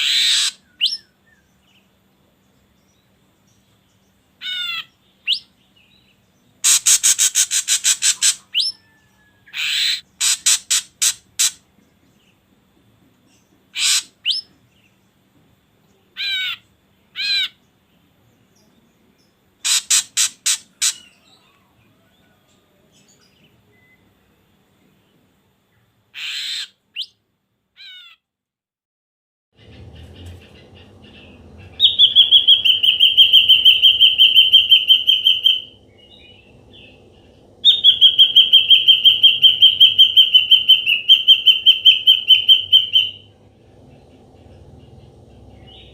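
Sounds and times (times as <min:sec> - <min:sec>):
drongo harsh rasping calls: 0:00.0 - 0:01.5, 0:04.3 - 0:05.5, 0:06.6 - 0:11.7, 0:13.7 - 0:14.6, 0:16.0 - 0:17.7, 0:19.6 - 0:22.6, 0:26.1 - 0:27.2, 0:27.8 - 0:28.3, 0:29.6 - 0:45.9
wavering falling bird calls: 0:00.0 - 0:12.5, 0:13.2 - 0:15.0, 0:15.8 - 0:24.2, 0:26.1 - 0:27.2, 0:29.6 - 0:45.9
drongo rising whistles: 0:29.9 - 0:45.9.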